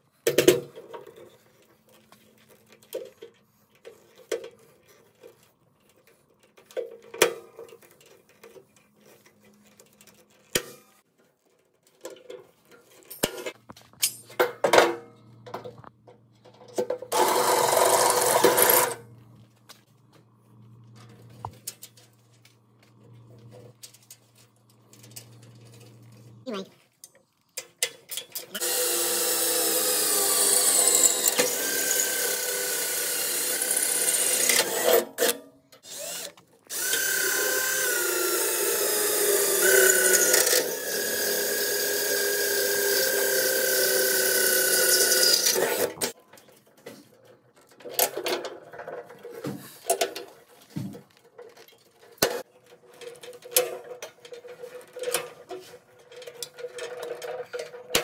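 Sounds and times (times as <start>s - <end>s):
power drill running: 17.1s - 19.0s, 28.6s - 46.1s.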